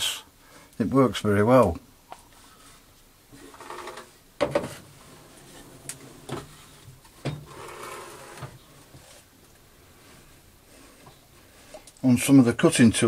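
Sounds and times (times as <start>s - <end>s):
objects knocking on workbench: 4.4s - 4.8s
rubbing and scraping: 4.6s - 11.9s.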